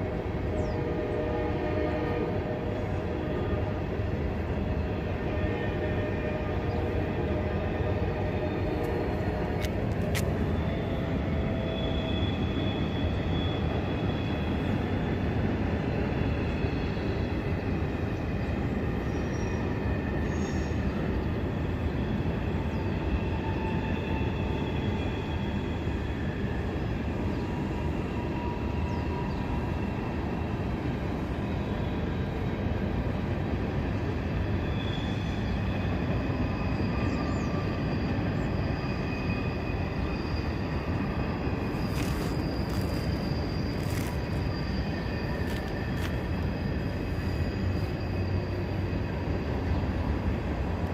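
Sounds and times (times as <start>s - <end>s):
faint high wheel squeals: 1.4s - 50.9s
freight train cars rolling: 27.8s - 50.9s.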